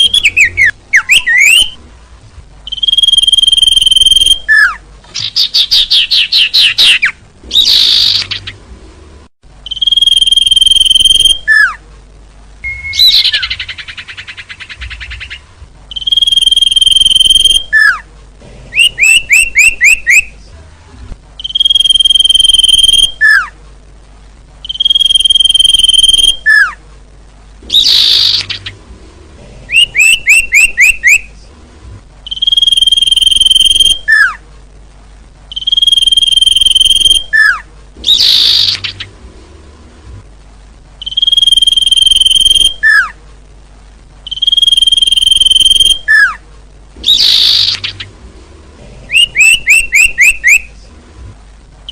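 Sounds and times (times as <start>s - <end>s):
falling bird chirps: 0.0s - 1.8s, 2.7s - 8.6s, 12.6s - 18.0s, 35.5s - 39.2s, 47.0s - 48.2s, 49.1s - 50.7s
harsh buzzy bird calls: 0.0s - 1.8s, 2.6s - 8.7s, 12.6s - 18.1s, 24.6s - 26.8s, 27.6s - 28.9s, 29.7s - 31.4s, 32.2s - 34.4s, 35.5s - 39.2s, 41.0s - 43.2s, 44.2s - 46.4s, 47.0s - 48.2s, 49.1s - 50.8s
high bird whistles: 0.0s - 1.8s, 2.7s - 8.5s, 9.7s - 11.8s, 12.6s - 18.0s, 21.4s - 23.5s, 24.6s - 26.8s, 27.8s - 28.6s, 29.7s - 31.3s, 32.3s - 34.4s, 35.5s - 39.0s, 41.0s - 43.2s, 44.3s - 46.4s, 47.0s - 48.1s, 49.1s - 50.7s.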